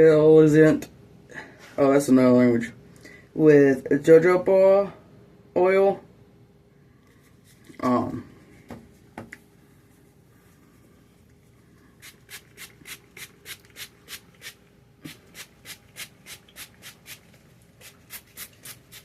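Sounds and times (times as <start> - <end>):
spray bottle spritzing: 12.0 - 19.0.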